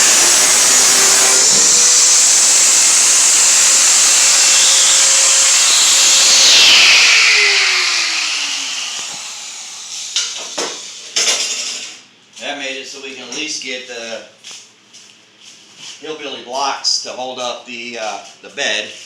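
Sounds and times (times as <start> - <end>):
angle grinder on steel: 0.0 - 10.6.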